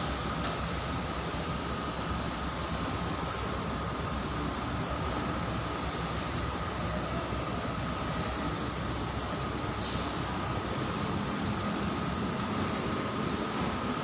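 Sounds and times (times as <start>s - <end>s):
short hiss: 9.8s - 10.2s.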